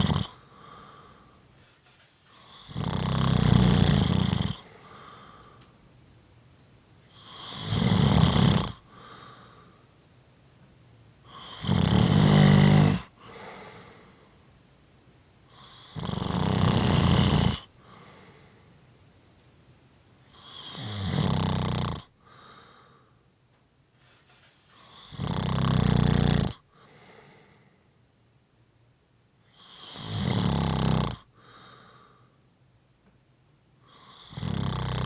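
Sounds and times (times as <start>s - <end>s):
loud low snores: 0.0s - 1.2s, 2.4s - 5.6s, 7.1s - 9.6s, 11.3s - 14.1s, 15.5s - 18.1s, 20.3s - 22.2s, 24.8s - 26.8s, 29.5s - 32.1s, 33.9s - 35.0s
soft breaths: 0.0s - 2.7s, 3.3s - 6.3s, 7.0s - 10.2s, 11.2s - 19.6s, 21.6s - 25.2s, 26.0s - 28.2s, 31.2s - 32.6s.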